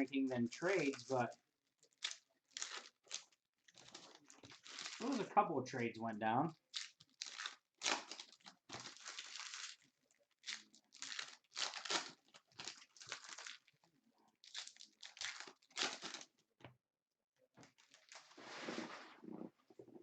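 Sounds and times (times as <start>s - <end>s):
card packaging crinkling and tearing: 0.1s - 5.3s, 6.6s - 13.8s, 14.4s - 16.3s, 17.6s - 18.4s.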